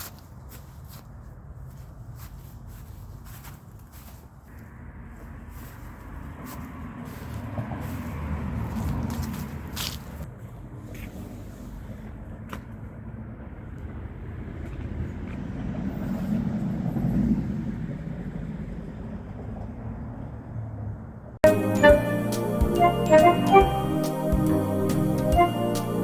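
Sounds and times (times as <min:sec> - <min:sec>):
car driving past: 0:04.7 - 0:10.2
music: 0:21.4 - 0:26.0.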